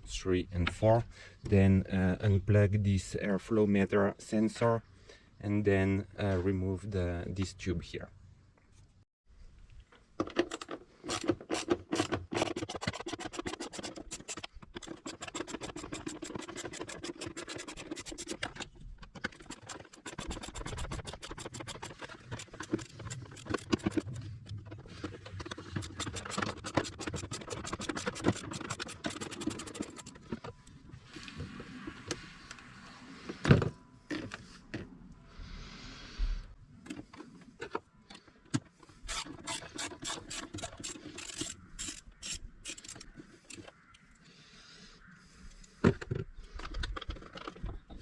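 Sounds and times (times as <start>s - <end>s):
hand ratchet clicking: 39.1s - 43.6s.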